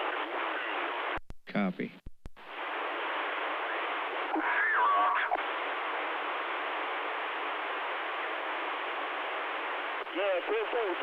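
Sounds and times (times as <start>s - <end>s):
radio static hiss: 0.0s - 11.0s
garbled warbling radio sound: 3.6s - 5.4s.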